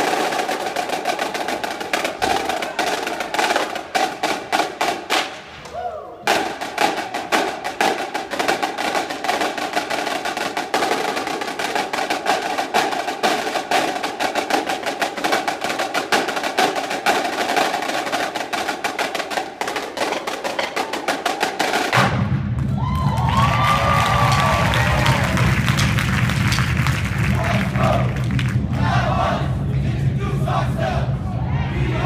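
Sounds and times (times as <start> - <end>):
marching drumline playing: 0.0 - 5.6, 6.2 - 32.0.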